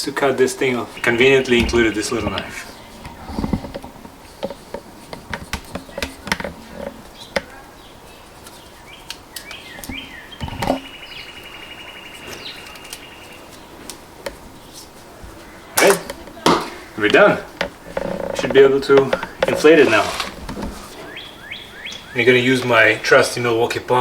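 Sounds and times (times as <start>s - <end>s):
high chirping trill: 0.6s - 2.9s
small clicks and taps: 8.4s - 10.9s.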